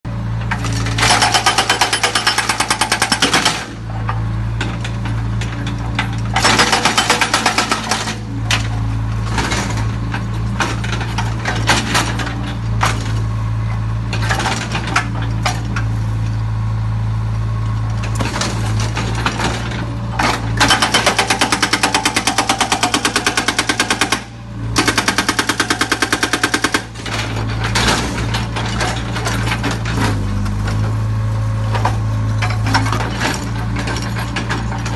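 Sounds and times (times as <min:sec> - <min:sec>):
diesel engine running: 0:00.1 - 0:34.9.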